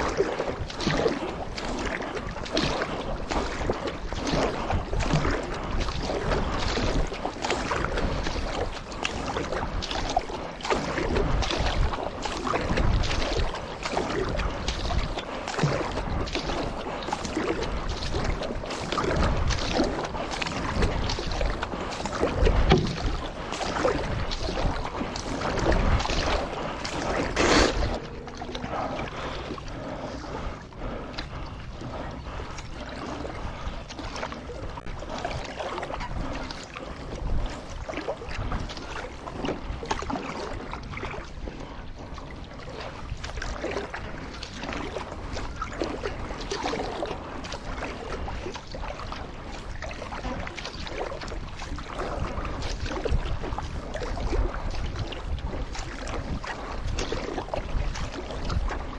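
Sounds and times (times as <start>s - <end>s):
paddle strokes in water: 0.0s - 58.9s
low rumble: 17.7s - 36.3s.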